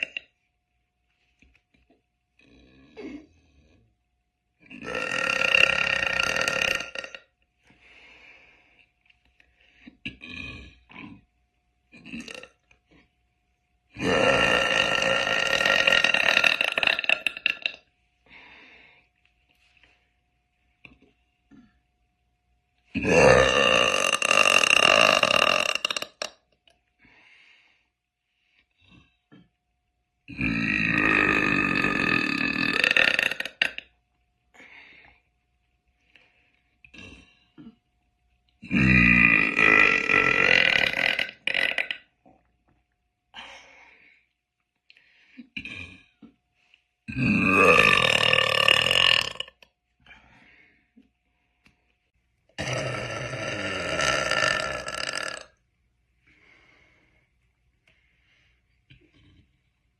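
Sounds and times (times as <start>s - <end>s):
woman burping: 0.0s - 0.3s, 2.4s - 3.4s, 4.7s - 7.3s, 10.0s - 11.2s, 11.9s - 12.6s, 14.0s - 17.8s, 23.0s - 26.4s, 30.3s - 33.9s, 38.6s - 42.1s, 47.1s - 49.7s, 52.6s - 55.6s
faint breaths: 7.5s - 10.0s, 18.1s - 21.8s, 26.9s - 29.6s, 34.5s - 37.8s, 43.3s - 47.1s, 50.0s - 52.2s, 56.1s - 59.9s.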